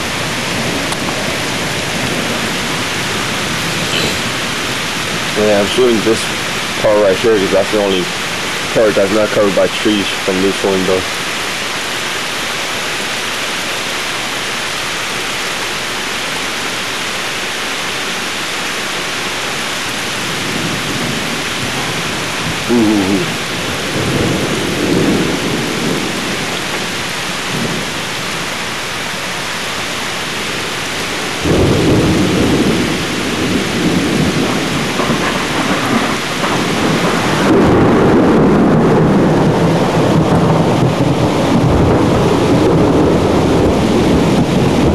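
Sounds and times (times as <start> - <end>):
thunder rumbling: 0.0 - 11.1, 19.7 - 28.6, 30.4 - 44.9
heavy rain hissing: 0.0 - 44.9.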